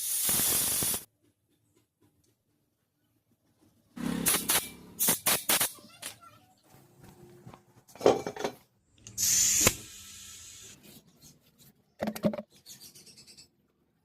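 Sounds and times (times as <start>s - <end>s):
air hissing from tyre: 0.0s - 1.1s, 9.1s - 10.8s.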